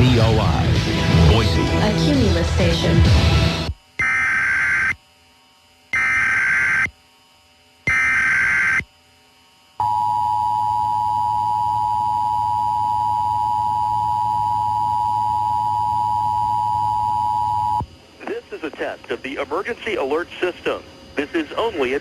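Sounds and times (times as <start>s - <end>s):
data burst tones: 4.0s - 5.0s, 5.9s - 6.9s, 7.9s - 8.9s.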